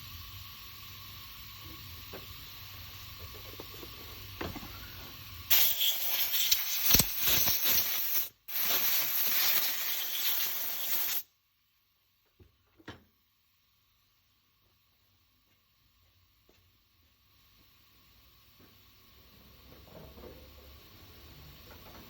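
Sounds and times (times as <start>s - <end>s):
pressurised jet hissing: 2.4s - 11.3s.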